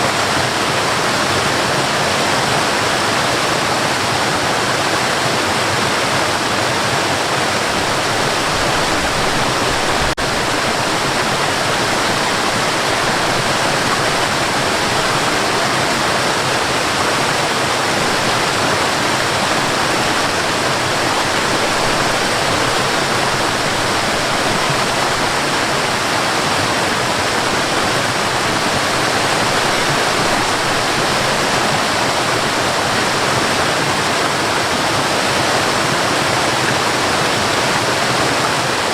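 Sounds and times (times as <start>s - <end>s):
waterfall pouring: 6.8s - 35.5s.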